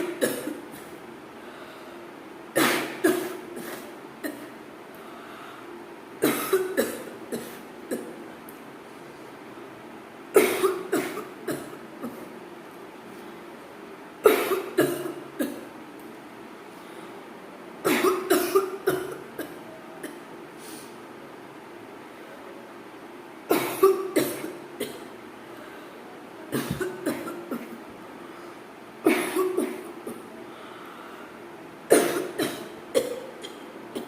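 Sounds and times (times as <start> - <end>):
person coughing: 0.0 - 0.9, 2.6 - 4.5, 6.2 - 8.1, 10.4 - 12.3, 14.2 - 15.6, 17.9 - 20.2, 23.5 - 25.1, 26.5 - 27.8, 29.0 - 30.2, 31.9 - 34.0.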